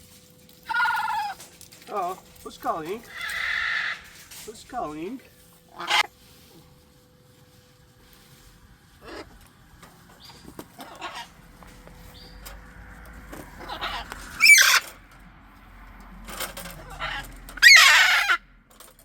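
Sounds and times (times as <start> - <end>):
harsh macaw screeches: 0.6 - 1.4, 3.0 - 4.3, 5.7 - 6.1, 9.0 - 9.3, 10.8 - 11.4, 13.6 - 14.9, 16.8 - 18.4
macaws squawking: 0.6 - 6.2, 8.9 - 9.5, 10.2 - 12.4, 13.4 - 15.0, 16.8 - 18.5.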